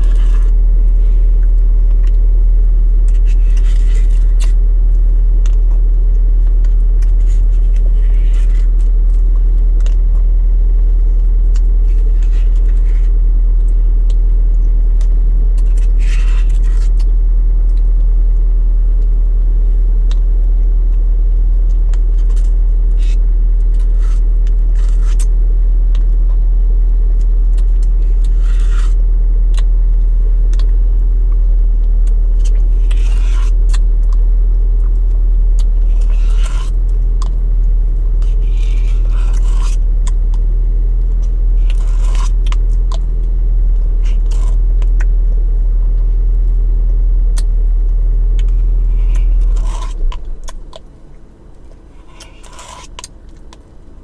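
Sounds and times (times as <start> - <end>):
loud low hum: 0.0 - 54.0
chewing and mouth clicks: 30.4 - 40.4.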